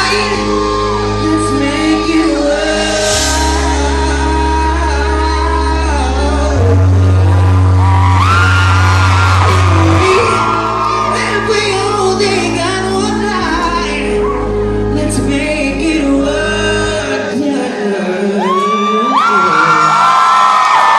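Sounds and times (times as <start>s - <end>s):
deep bass notes: 0.0s - 18.4s
live band music with singing: 0.0s - 20.9s.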